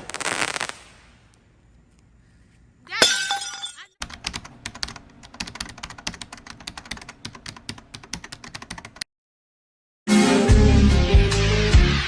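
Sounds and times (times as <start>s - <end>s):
fireworks crackling: 0.0s - 1.5s
music: 10.1s - 12.0s.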